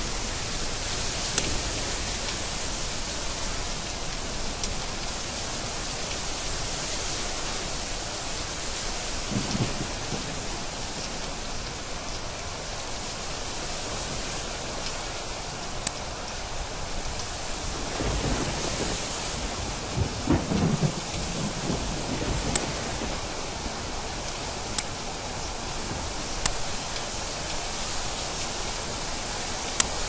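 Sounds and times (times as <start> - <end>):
low rumble of thunder: 0.0 - 12.0, 17.6 - 26.8
heavy rain falling: 0.0 - 30.0
sharp crack of thunder: 9.2 - 11.1, 17.7 - 25.0.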